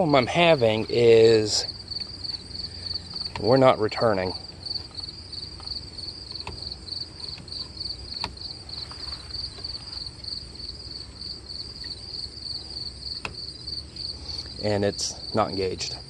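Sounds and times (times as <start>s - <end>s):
insects chirping: 0.0s - 16.0s
sharp clicks: 3.1s - 3.6s.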